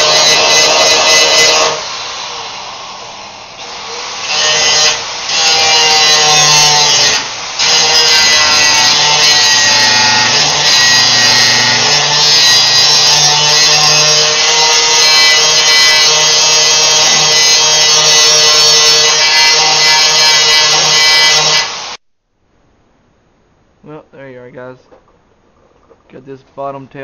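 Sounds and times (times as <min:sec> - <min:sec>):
power grinder grinding metal: 0:00.0 - 0:02.9, 0:03.5 - 0:22.0.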